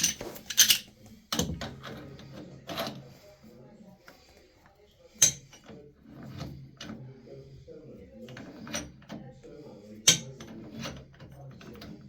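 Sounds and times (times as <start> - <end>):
tools clicking and knocking on metal: 0.0 - 3.0, 5.2 - 7.0, 8.3 - 9.3, 10.0 - 12.0.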